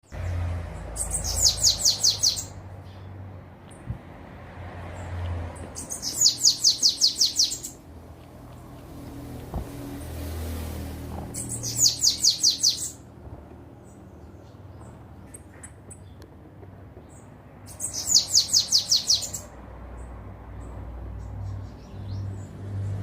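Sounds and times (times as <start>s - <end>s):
bird singing high thin notes: 5.8s - 7.8s, 11.4s - 13.0s.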